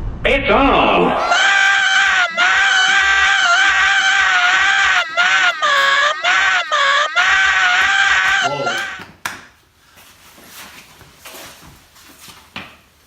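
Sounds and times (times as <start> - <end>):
person screaming high-pitched: 1.2 - 9.1.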